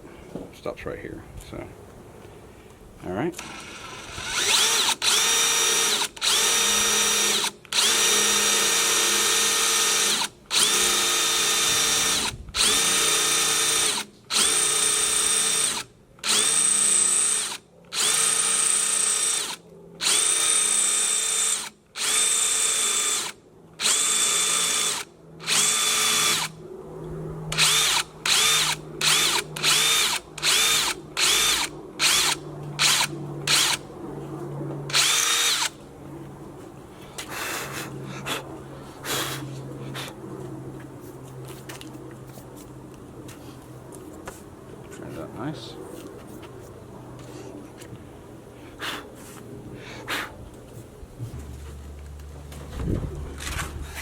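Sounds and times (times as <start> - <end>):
power drill motor whine: 3.4 - 26.6, 27.5 - 33.8, 34.9 - 35.8.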